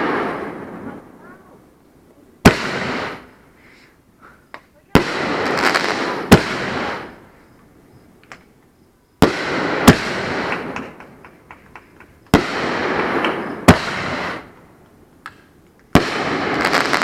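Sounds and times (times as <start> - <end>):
firework bangs: 0.0 - 1.4, 2.4 - 3.5, 4.8 - 7.5, 9.2 - 17.0
firework hissing: 2.4 - 7.6, 9.2 - 11.0, 12.3 - 14.7, 16.0 - 17.0
small pops: 14.8 - 16.0.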